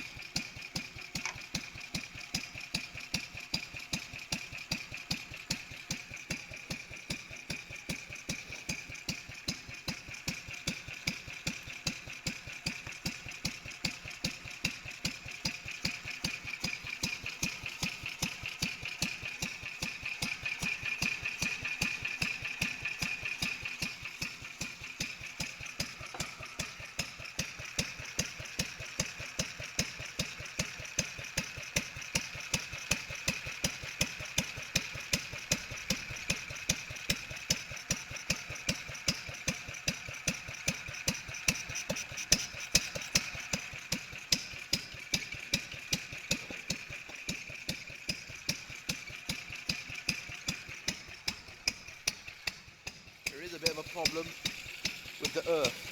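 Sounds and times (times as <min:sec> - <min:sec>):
stationary engine running: 0:16.2 - 0:28.6, 0:40.4 - 0:55.9.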